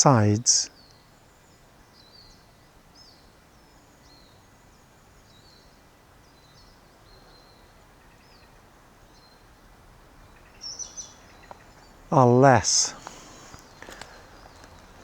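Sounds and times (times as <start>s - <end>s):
faint songbird song: 0.0s - 15.0s
distant road traffic hum: 7.8s - 15.0s.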